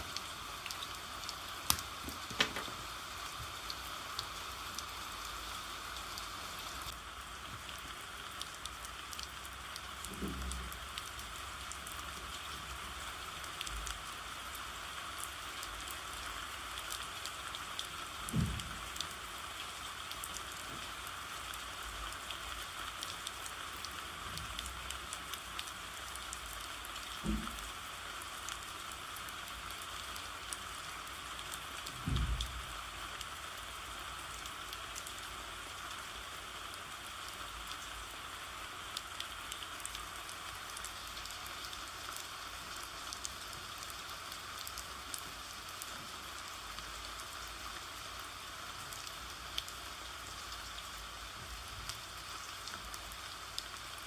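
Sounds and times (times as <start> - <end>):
steady rain: 0.0 - 54.0.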